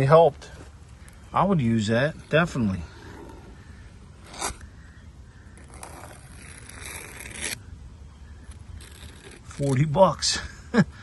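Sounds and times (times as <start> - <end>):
rasping scraping noise: 2.0 - 4.7, 5.5 - 7.6, 8.4 - 10.0.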